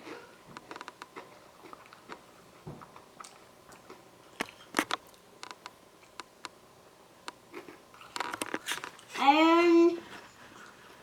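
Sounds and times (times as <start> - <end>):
child chewing crunchy snack: 0.0 - 6.4, 7.4 - 9.2.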